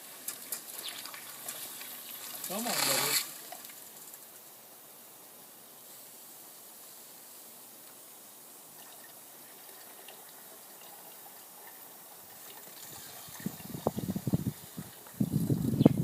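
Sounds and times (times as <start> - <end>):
steam injector hissing and sputtering: 2.5 - 3.3.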